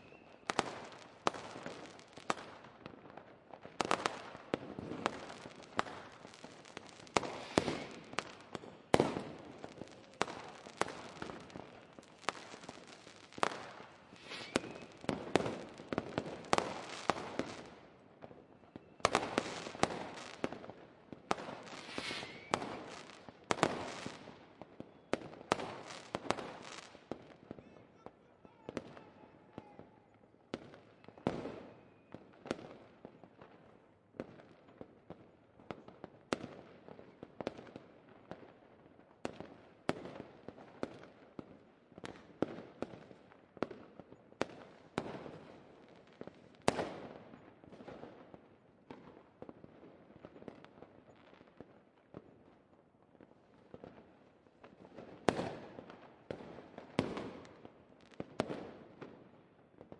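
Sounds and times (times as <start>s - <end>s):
fireworks bangs with echo: 0.4s - 27.8s, 28.6s - 33.6s, 54.7s - 59.2s.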